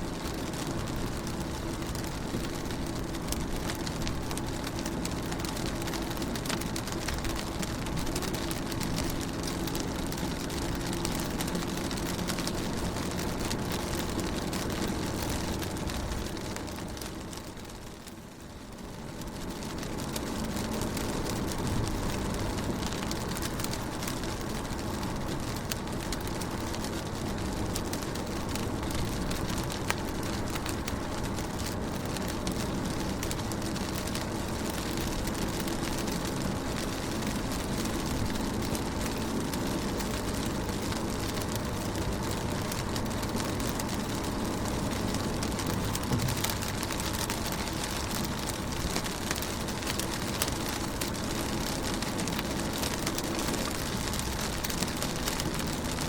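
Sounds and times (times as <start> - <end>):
rain on a car: 0.0 - 56.0
low rumble: 28.2 - 49.4.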